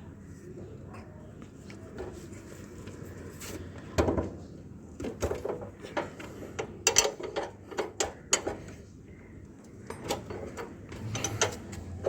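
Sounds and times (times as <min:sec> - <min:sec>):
small clicks and knocks of parts: 0:05.0 - 0:08.8.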